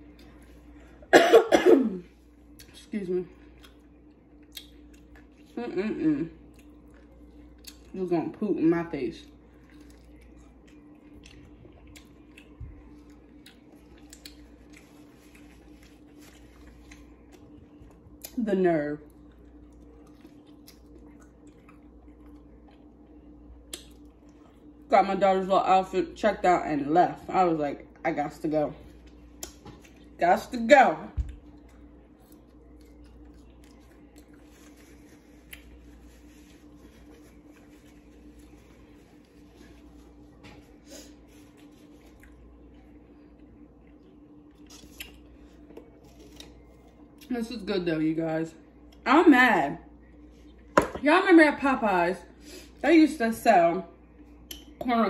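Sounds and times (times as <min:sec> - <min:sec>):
steady low hum: 0:00.0 - 0:55.0
person chewing food: 0:03.4 - 0:05.6, 0:06.4 - 0:07.9, 0:09.4 - 0:18.4, 0:19.1 - 0:24.7, 0:31.3 - 0:47.3.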